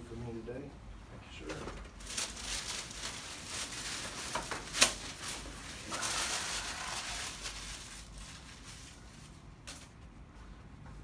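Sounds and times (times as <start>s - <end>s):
rustling: 2.0s - 9.9s.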